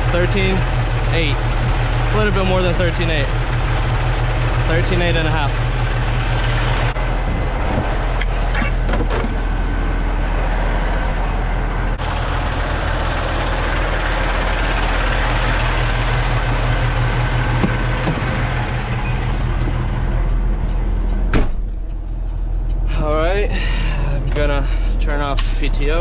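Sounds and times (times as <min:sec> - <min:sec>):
truck diesel engine running: 0:00.0 - 0:26.0.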